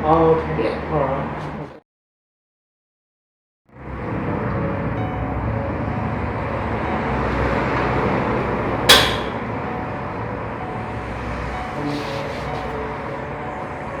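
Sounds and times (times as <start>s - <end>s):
steady background noise: 4.0s - 14.0s
sharp crack: 8.9s - 9.6s.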